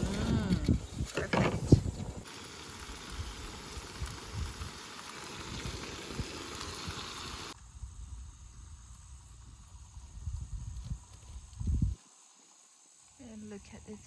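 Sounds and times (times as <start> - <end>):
wind rumble on microphone: 0.0 - 2.3, 7.7 - 12.0
pork sizzling: 1.8 - 9.2.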